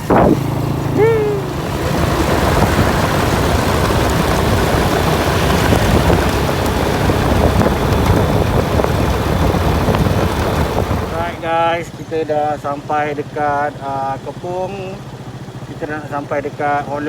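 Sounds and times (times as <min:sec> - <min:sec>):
wind rushing: 0:00.0 - 0:11.7
motorcycle engine: 0:00.0 - 0:17.0.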